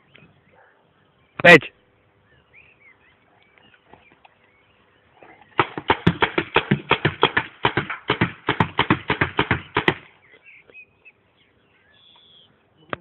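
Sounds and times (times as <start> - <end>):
paintball gun rapid firing: 5.6 - 10.1.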